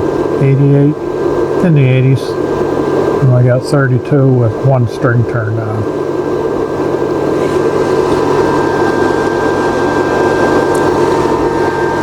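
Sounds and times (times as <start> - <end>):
cooling fan whirring: 0.0 - 12.0
electrical hum: 0.0 - 12.0
thin steady high tones: 7.6 - 12.0.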